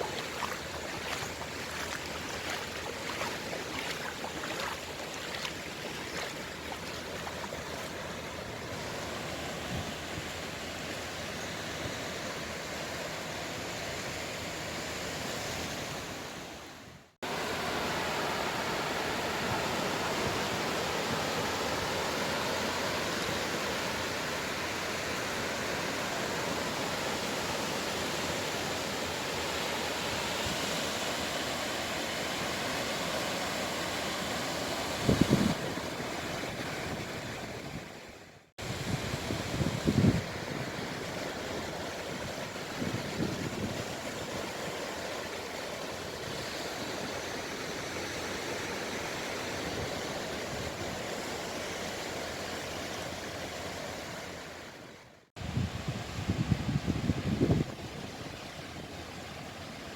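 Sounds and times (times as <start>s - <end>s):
sea waves breaking: 0.0s - 10.7s.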